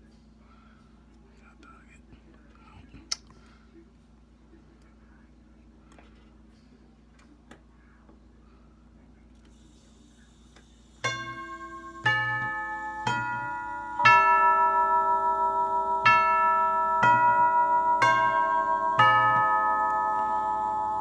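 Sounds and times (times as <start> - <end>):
four-note door chime: 11.0 - 21.0.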